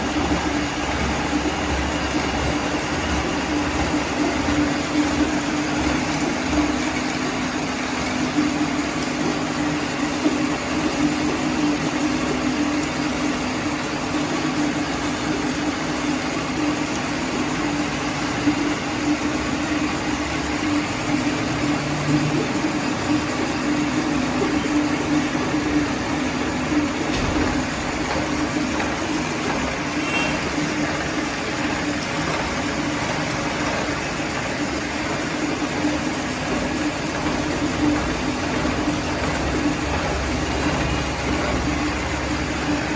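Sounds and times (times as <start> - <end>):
milling machine cutting metal: 14.6 - 35.0.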